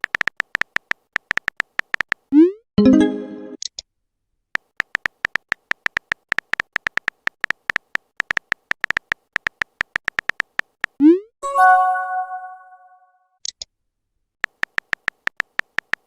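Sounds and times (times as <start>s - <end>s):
phone keyboard tapping clicks: 0.0s - 2.3s, 4.6s - 11.0s, 14.4s - 16.0s.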